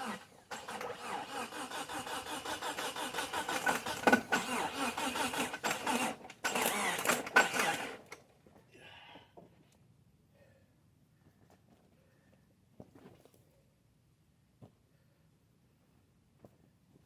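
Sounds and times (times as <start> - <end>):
starter motor cranking: 0.0 - 8.2.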